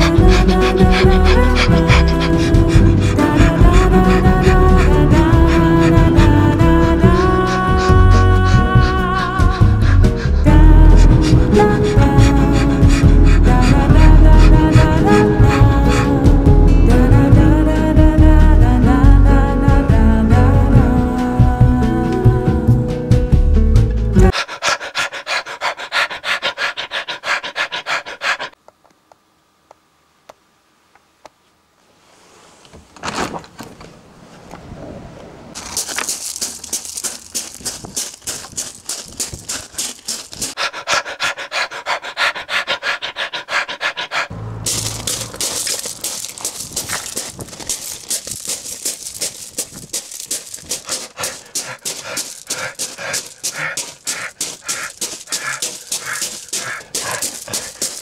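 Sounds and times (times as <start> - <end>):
person panting heavily: 0.0 - 17.3, 24.2 - 28.6, 35.6 - 58.0.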